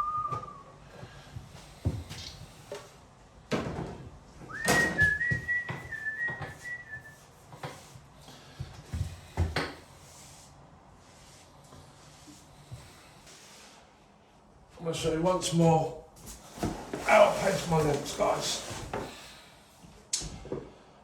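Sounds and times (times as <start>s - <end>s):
person whistling a tune: 0.0s - 0.8s, 4.5s - 7.2s.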